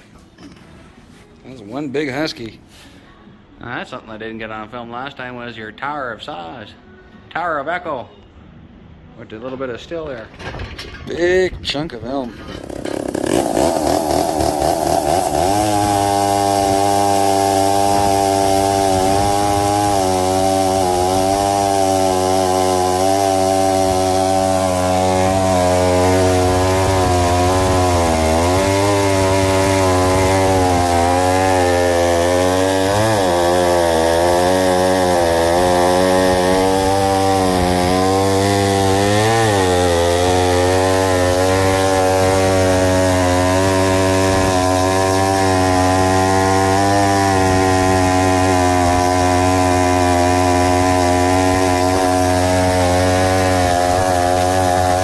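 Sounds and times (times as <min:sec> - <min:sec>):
chainsaw cutting wood: 0:12.4 - 0:55.0.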